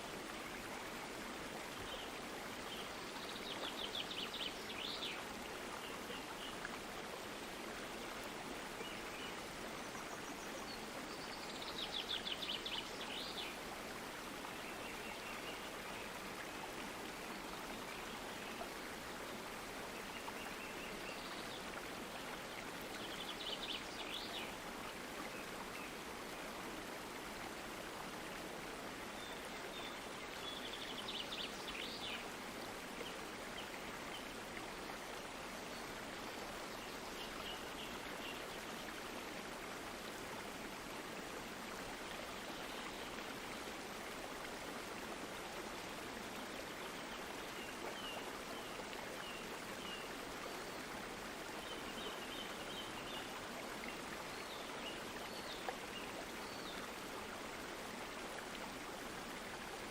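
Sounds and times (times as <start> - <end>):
flowing stream babble: 0.0 - 59.9.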